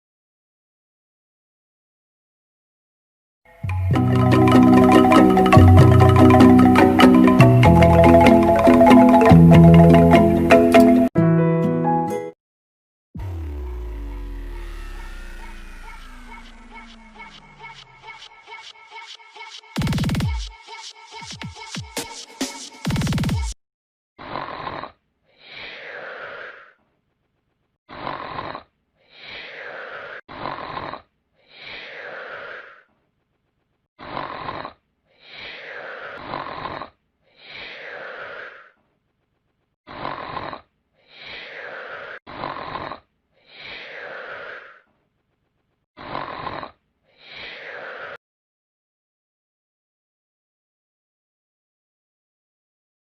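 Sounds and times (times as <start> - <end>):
man snoring: 27.9 - 32.3, 35.8 - 38.5, 39.9 - 40.7, 41.5 - 44.6, 46.0 - 48.1.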